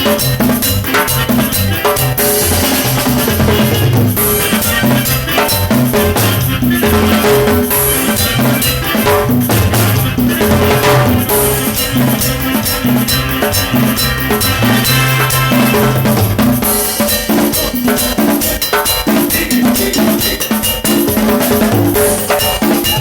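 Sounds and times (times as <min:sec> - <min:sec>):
repeating bass line: 0:00.0 - 0:16.8
bass drum: 0:00.0 - 0:17.8
hand percussion: 0:00.0 - 0:23.0
snare drum: 0:00.0 - 0:23.0.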